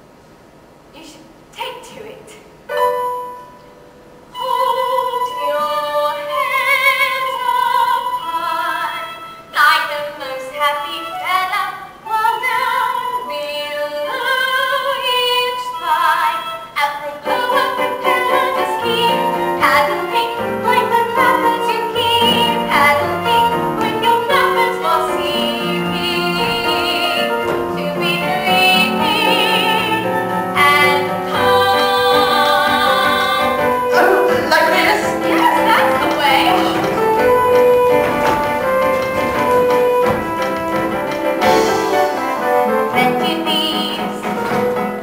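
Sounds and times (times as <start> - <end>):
woman singing: 4.4 - 44.6
instrumental accompaniment: 17.2 - 45.0.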